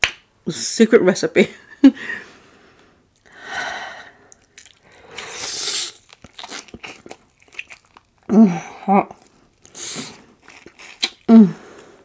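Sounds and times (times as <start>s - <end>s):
person chewing food: 4.2s - 12.0s
small wet mouth clicks: 10.9s - 11.3s.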